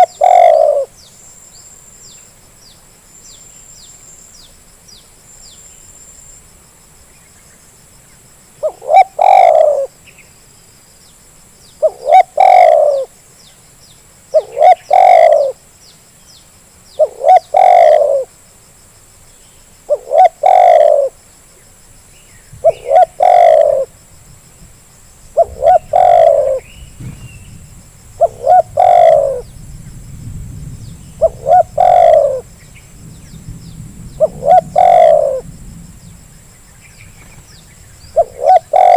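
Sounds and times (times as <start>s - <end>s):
dove cooing: 0.0s - 0.9s, 8.6s - 10.0s, 11.8s - 13.1s, 14.3s - 15.6s, 17.0s - 18.3s, 19.9s - 21.2s, 22.6s - 24.0s, 25.4s - 27.5s, 28.2s - 29.5s, 31.2s - 32.6s, 34.2s - 35.5s, 38.1s - 38.9s.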